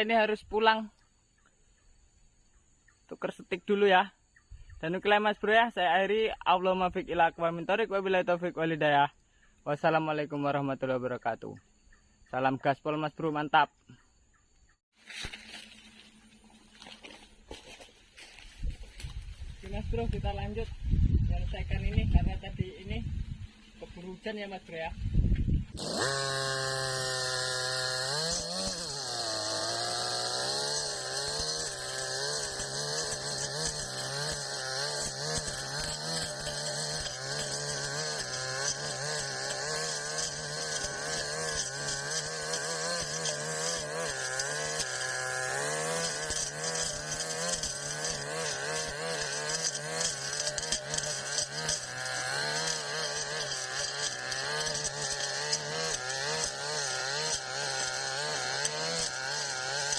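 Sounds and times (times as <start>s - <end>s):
brush cutter engine revving: 15.0s - 59.9s.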